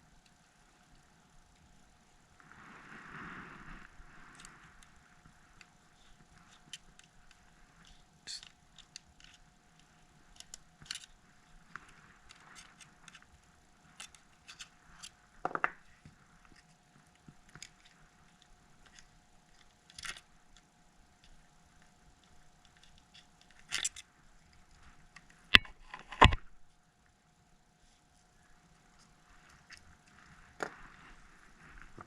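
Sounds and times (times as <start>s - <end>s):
faint steady hum: 0.0s - 32.0s
small tools clicking on a phone: 6.3s - 11.2s, 25.1s - 26.5s.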